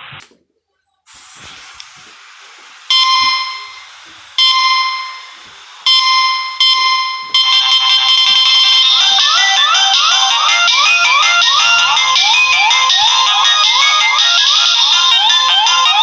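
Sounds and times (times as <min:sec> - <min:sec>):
soft hiss: 0:00.0 - 0:05.9
phone ringtone chimes: 0:02.9 - 0:16.0.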